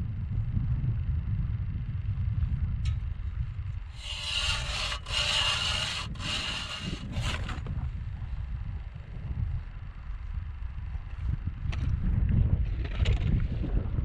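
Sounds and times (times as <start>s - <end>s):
wind rumble on microphone: 0.0s - 14.0s
rasping scraping strokes: 3.9s - 7.8s.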